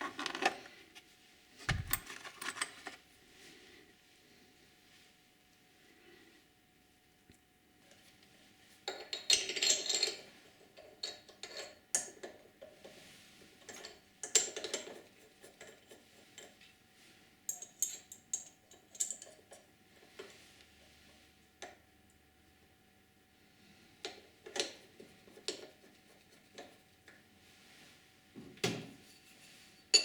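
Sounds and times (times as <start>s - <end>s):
metal tools clinking and clattering: 1.6s - 3.0s.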